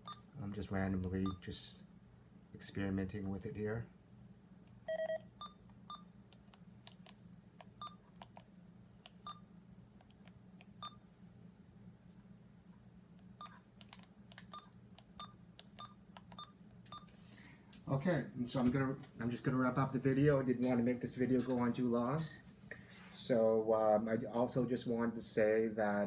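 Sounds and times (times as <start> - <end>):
steady low hum: 0.0 - 26.0
scanner keypad beep: 4.9 - 6.1, 10.8 - 11.0, 14.5 - 17.1.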